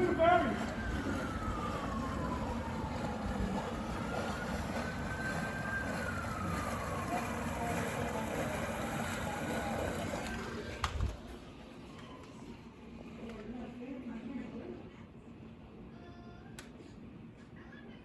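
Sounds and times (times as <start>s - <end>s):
distant siren wailing: 0.0s - 13.2s
street noise: 0.0s - 13.6s.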